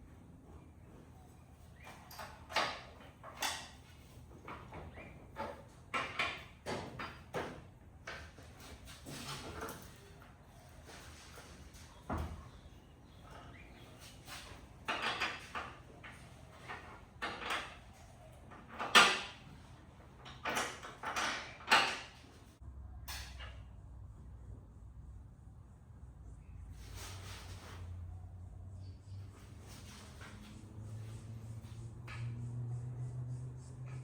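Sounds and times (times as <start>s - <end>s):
metal parts and tools clunking: 1.8s - 10.1s, 10.8s - 23.7s.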